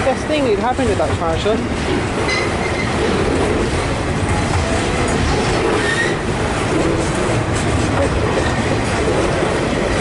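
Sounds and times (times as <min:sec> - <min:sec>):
train wheels rumbling on rails: 0:00.0 - 0:10.0
high wheel squeal: 0:05.8 - 0:06.2.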